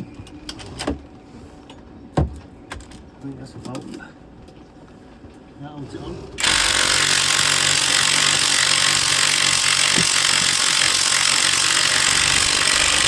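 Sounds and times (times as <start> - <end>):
power tool hissing: 6.4 - 13.0.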